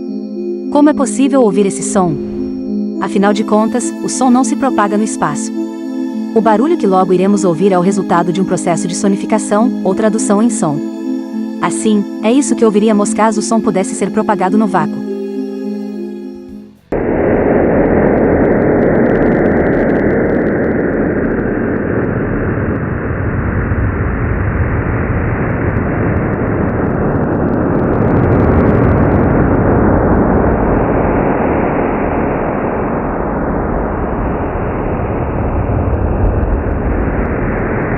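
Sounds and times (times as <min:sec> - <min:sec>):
dense rumbling drone: 0:00.0 - 0:06.6, 0:16.4 - 0:37.9.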